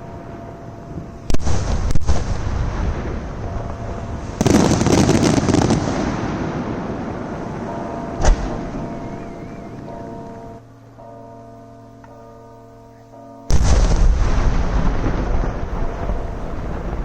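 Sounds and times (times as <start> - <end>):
fireworks crackling: 0.0 - 10.4, 13.5 - 17.0
echoing rumble: 0.0 - 11.0, 13.5 - 17.0
firework shell bangs: 8.2 - 8.8.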